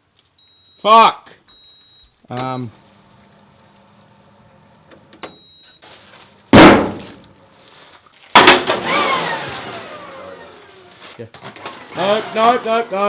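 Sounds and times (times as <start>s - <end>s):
loud sudden bangs: 6.5s - 7.2s.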